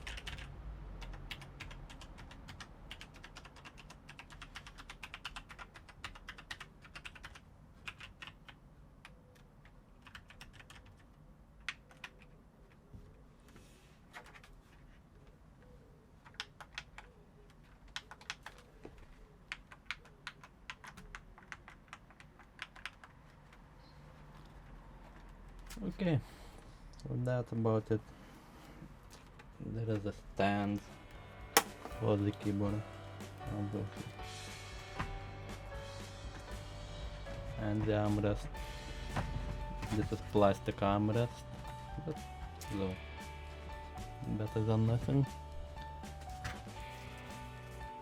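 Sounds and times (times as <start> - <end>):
mechanical keyboard typing: 0.0 - 12.4, 16.2 - 18.7, 19.5 - 23.7.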